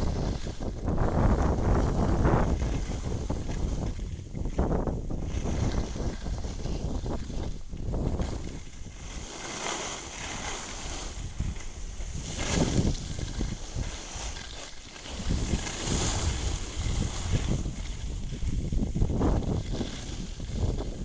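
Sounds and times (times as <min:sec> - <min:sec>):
skis hissing and scraping on snow: 0:00.0 - 0:00.7, 0:01.4 - 0:04.0, 0:05.3 - 0:21.0
wind buffeting microphone: 0:00.0 - 0:21.0.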